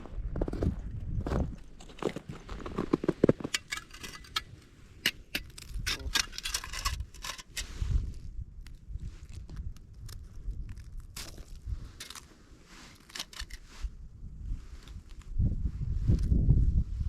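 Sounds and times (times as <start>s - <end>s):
hard objects clinking and scraping: 3.2s - 7.8s, 12.9s - 13.7s.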